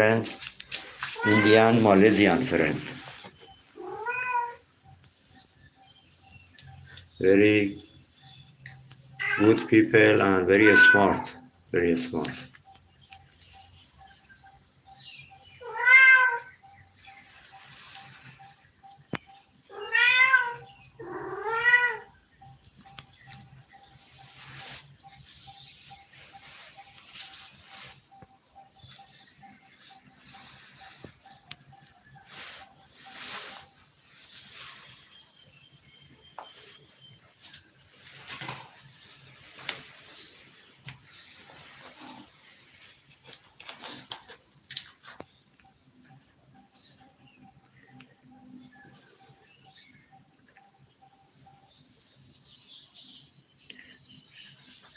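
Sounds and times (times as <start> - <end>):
crickets chirring: 0.0 - 54.9
cat meowing: 1.1 - 1.9, 3.8 - 4.6, 9.2 - 9.7, 10.4 - 11.4, 15.6 - 16.5, 19.7 - 22.1.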